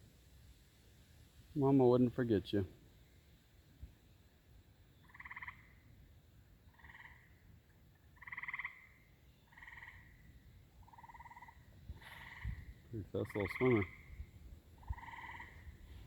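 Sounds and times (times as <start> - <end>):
frogs trilling: 4.9 - 6.0, 6.6 - 16.0.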